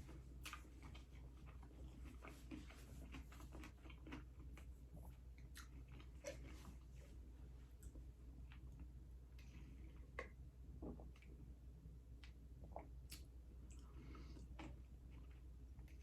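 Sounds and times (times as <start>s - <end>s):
chewing food: 0.0s - 7.2s, 12.2s - 16.0s.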